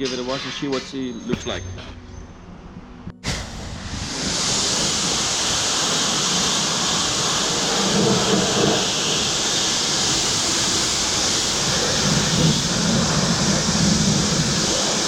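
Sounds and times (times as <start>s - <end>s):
water jet hissing on car: 3.3s - 15.0s.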